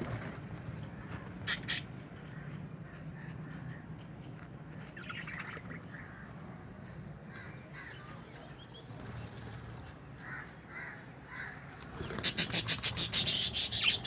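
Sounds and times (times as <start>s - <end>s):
budgerigar squawks: 1.4s - 1.9s, 12.2s - 14.0s
faint budgerigar chattering: 1.4s - 1.9s, 5.0s - 6.3s, 11.4s - 14.0s.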